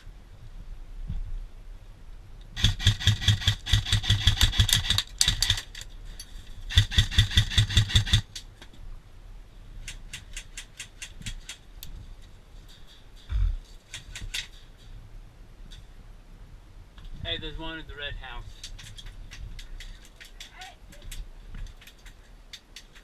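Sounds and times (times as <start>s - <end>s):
airsoft rifle firing bursts: 2.6s - 5.7s, 6.7s - 8.3s.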